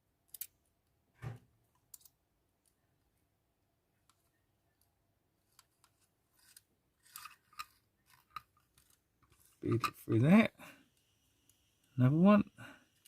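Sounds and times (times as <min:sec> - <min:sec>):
faint clicks of small parts: 0:00.2 - 0:00.6, 0:01.7 - 0:03.1, 0:04.0 - 0:10.2.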